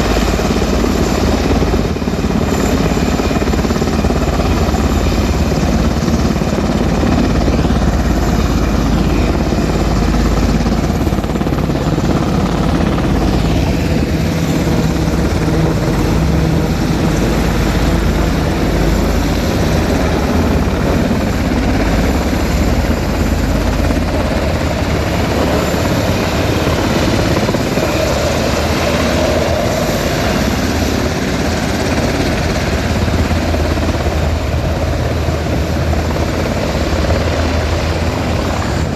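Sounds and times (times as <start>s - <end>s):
helicopter rotor and engine: 0.0s - 38.9s.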